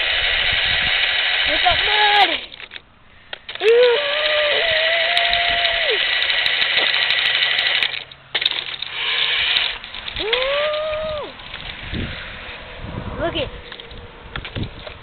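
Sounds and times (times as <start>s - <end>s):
toy truck motor whining: 0.0s - 2.7s, 3.3s - 12.1s
sharp clicks: 1.0s - 11.8s.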